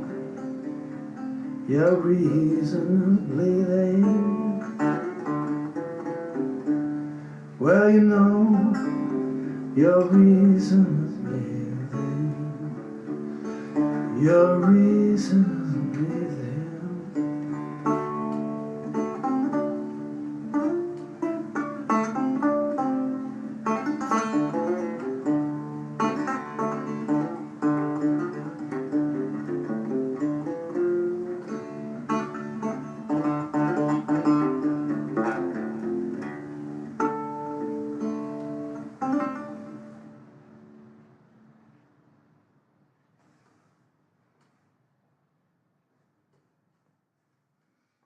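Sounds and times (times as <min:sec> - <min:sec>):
blues guitar playing: 0:00.0 - 0:41.8.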